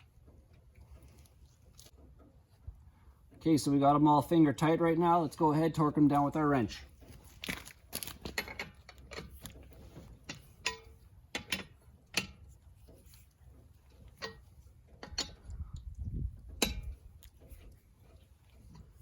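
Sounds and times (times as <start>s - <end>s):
lug wrench clicking on nuts: 10.2s - 12.5s.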